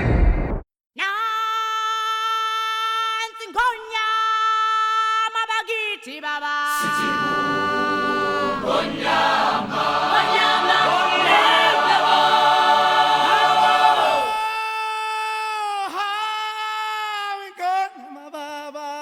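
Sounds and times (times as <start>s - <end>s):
choir singing a cappella: 6.7s - 14.6s.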